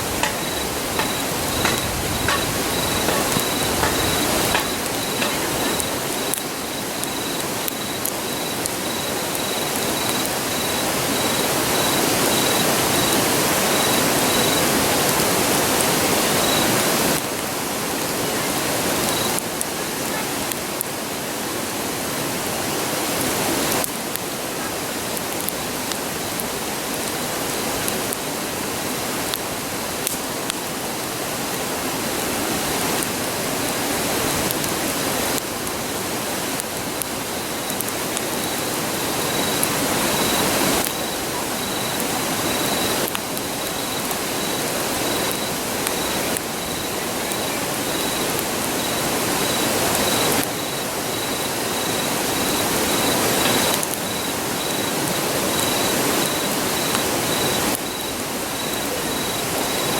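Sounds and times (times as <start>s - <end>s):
pulsing insect trill: 0.0s - 15.0s, 15.9s - 17.0s, 18.9s - 19.4s, 37.1s - 59.9s
campfire crackles: 0.0s - 59.9s
river rushing: 35.9s - 59.9s.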